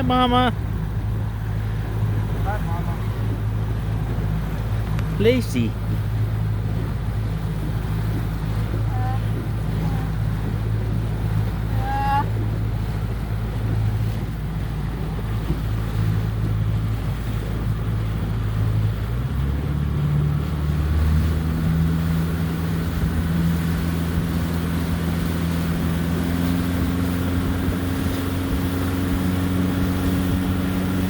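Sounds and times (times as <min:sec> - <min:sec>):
motorboat engine running: 0:00.0 - 0:31.0
water: 0:00.0 - 0:31.0
wind noise: 0:00.0 - 0:31.0.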